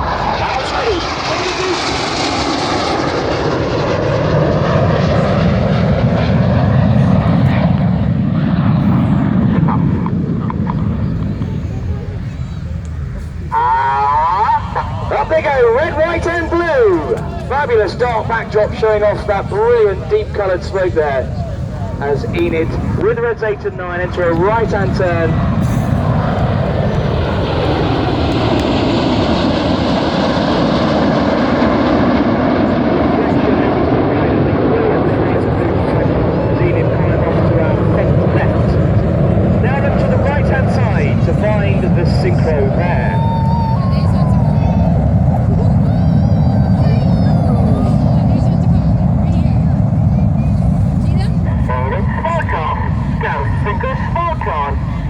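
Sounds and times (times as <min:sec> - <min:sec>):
jets roaring overhead: 0:00.0 - 0:55.0.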